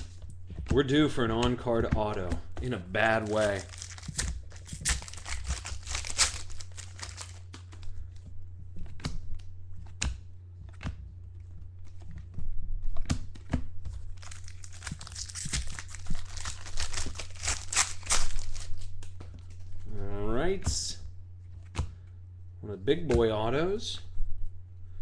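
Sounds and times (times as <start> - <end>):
wrappers tearing and crinkling: 2.8 - 7.9, 14.1 - 19.1.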